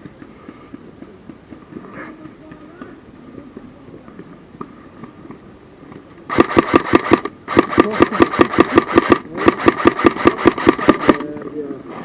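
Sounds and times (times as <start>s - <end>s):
airsoft gun firing full auto: 6.3s - 11.3s.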